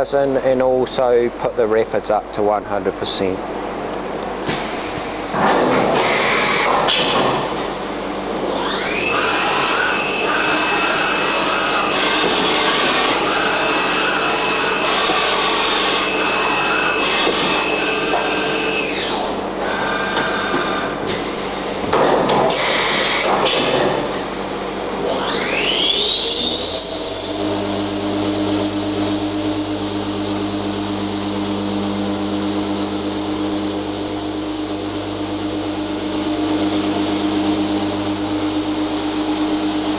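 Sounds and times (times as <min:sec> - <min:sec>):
machine spindle whining: 0:08.4 - 0:20.9, 0:25.0 - 0:39.9
short machine sounds: 0:25.0 - 0:39.9.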